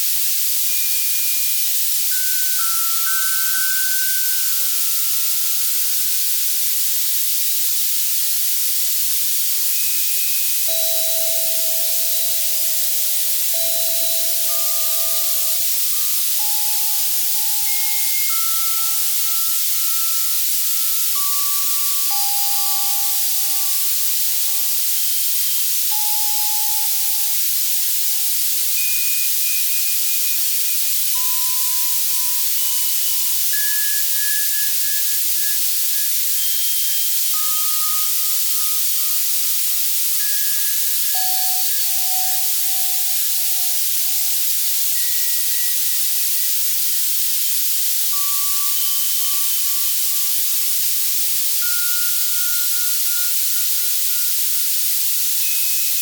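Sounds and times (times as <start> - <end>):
synthesizer white noise hiss: 0.0 - 56.0
soft bell-like tones: 0.6 - 6.5, 9.7 - 47.0, 48.1 - 56.0.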